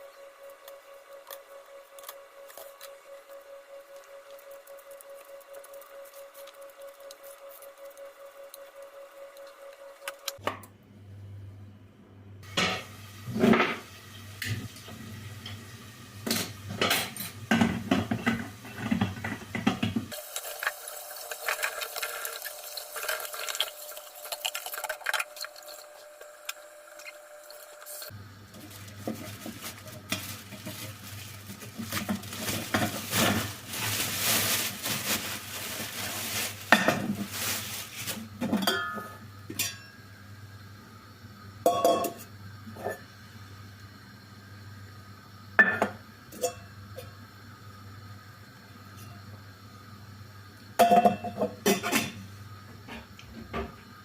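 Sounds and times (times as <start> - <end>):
dishes and utensils clinking: 38.5 - 40.0, 50.8 - 52.2.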